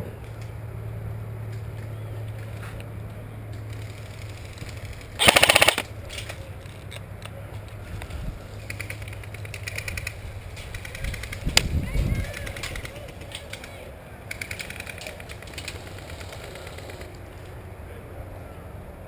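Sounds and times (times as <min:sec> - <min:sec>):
airsoft gun rapid fire: 0:05.2 - 0:05.9.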